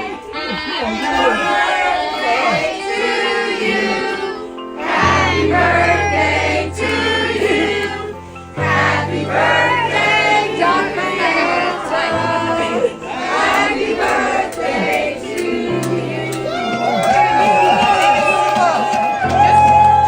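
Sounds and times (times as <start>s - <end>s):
choir singing: 0.0s - 20.0s
long held bass notes: 4.8s - 14.8s.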